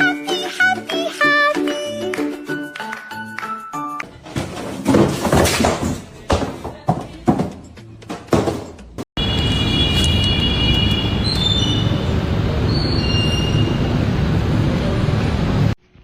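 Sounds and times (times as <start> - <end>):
irregular knocks and thuds: 4.0 - 9.0.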